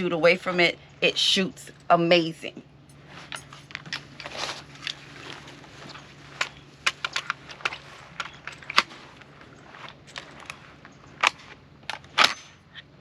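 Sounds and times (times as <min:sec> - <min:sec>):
rifle metallic clicks: 0:11.2 - 0:12.6.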